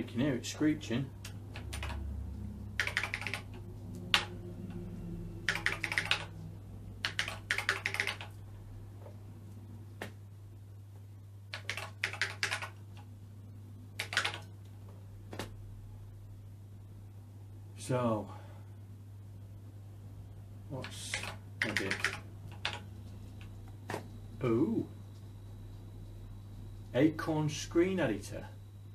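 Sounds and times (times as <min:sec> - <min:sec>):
steady low hum: 0:00.0 - 0:28.9
mechanical keyboard keystrokes: 0:01.6 - 0:02.0, 0:02.8 - 0:03.5, 0:05.5 - 0:06.3, 0:07.0 - 0:08.3, 0:11.5 - 0:12.8, 0:14.0 - 0:14.5, 0:20.8 - 0:22.8.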